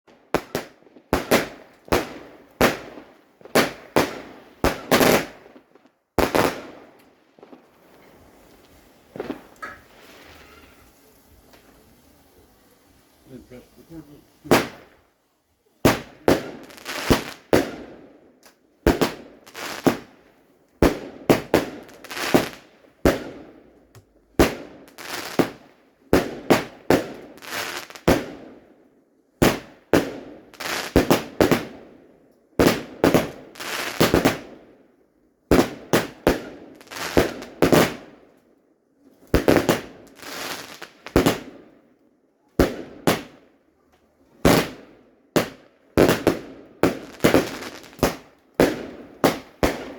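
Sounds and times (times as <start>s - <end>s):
fireworks banging: 0.1s - 11.9s, 13.3s - 15.0s, 15.8s - 20.2s, 20.8s - 28.6s, 39.4s - 41.6s, 44.4s - 49.9s.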